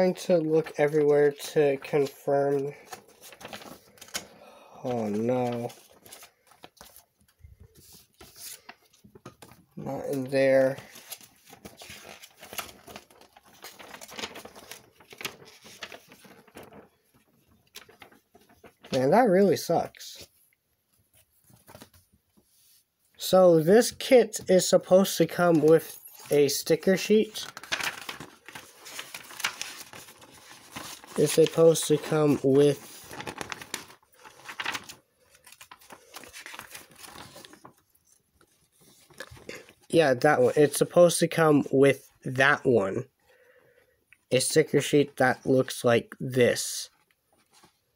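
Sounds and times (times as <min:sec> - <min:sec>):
plastic packaging crinkling: 0:10.2 - 0:19.1, 0:25.3 - 0:39.7.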